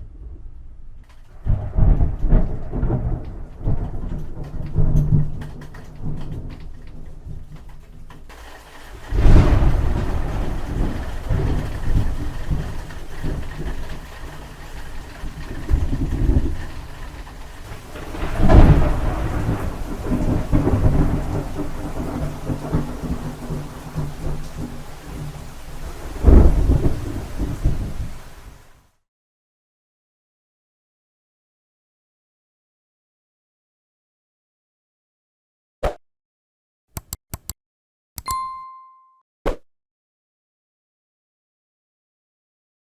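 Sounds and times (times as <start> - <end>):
thunder claps and rumble: 0.0 - 28.7
steady rain: 1.0 - 28.9.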